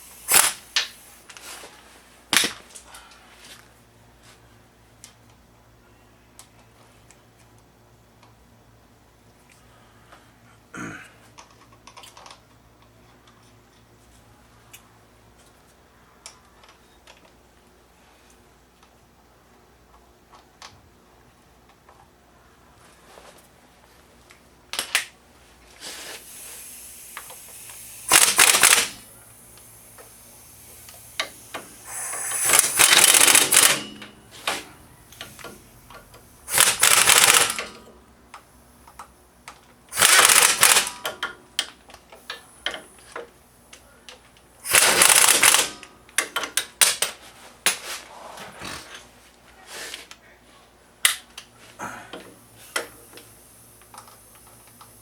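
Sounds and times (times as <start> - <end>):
tool clicks and clatter: 0.1 - 1.4, 27.1 - 43.3, 44.1 - 47.9
impact wrench rattling: 27.4 - 29.1, 30.0 - 34.6, 35.2 - 37.8, 39.9 - 41.2, 44.7 - 47.1.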